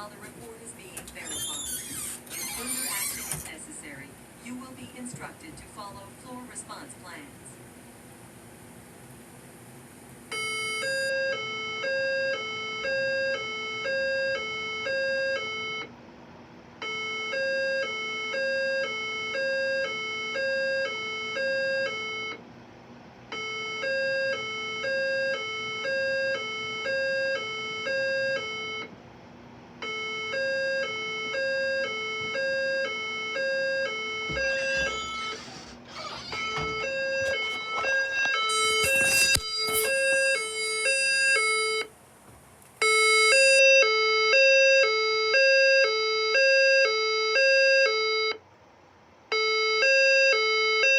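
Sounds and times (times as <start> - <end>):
high and low alarm chime tones: 34.2 - 35.4.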